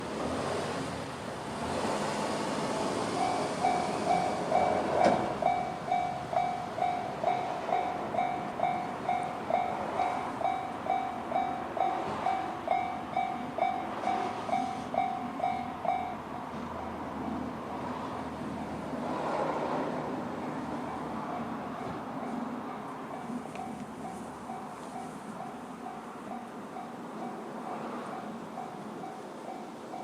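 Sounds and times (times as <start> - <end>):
level-crossing electronic bell: 3.2 - 16.4.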